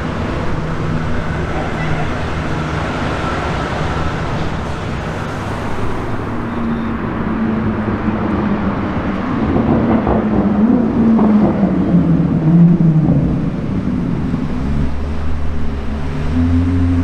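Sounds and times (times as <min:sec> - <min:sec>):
steady pitched tone: 0:00.0 - 0:09.1, 0:10.7 - 0:17.0
car engine droning: 0:00.0 - 0:17.0
road and tyre noise: 0:00.0 - 0:17.0.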